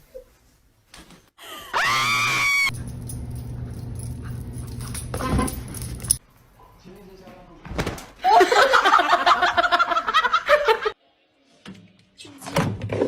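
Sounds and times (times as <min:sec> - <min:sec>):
shrill rising scream: 0:01.7 - 0:02.8
steady low hum: 0:02.8 - 0:06.2.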